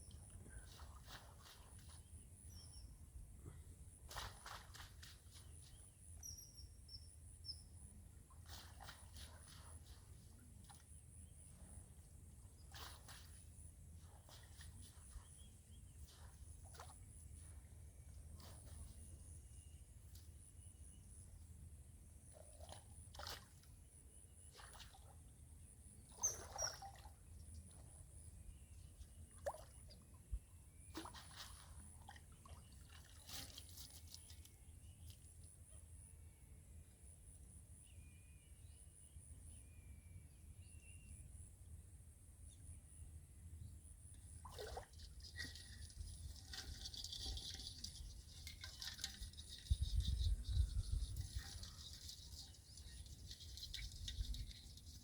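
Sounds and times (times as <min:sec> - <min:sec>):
water sloshing and dripping: 0:00.0 - 0:02.6, 0:04.0 - 0:06.3, 0:22.4 - 0:23.8, 0:24.5 - 0:25.4, 0:26.0 - 0:28.2, 0:28.9 - 0:35.4, 0:44.1 - 0:55.0
faint bird chirps: 0:00.0 - 0:13.4, 0:25.9 - 0:31.8, 0:46.6 - 0:55.0
water splashing: 0:44.4 - 0:50.0.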